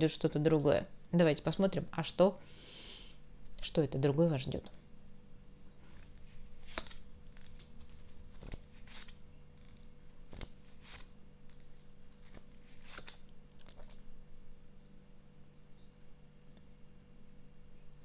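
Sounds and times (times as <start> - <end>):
low steady hum: 0.0 - 18.0
cards clicking and rustling: 6.0 - 14.0.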